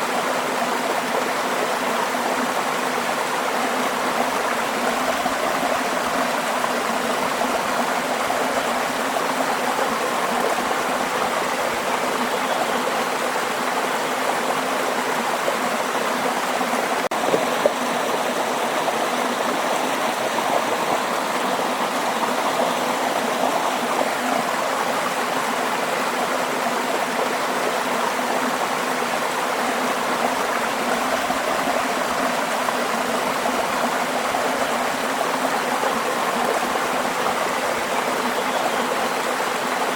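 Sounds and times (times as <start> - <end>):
waterfall rushing: 14.7 - 26.4.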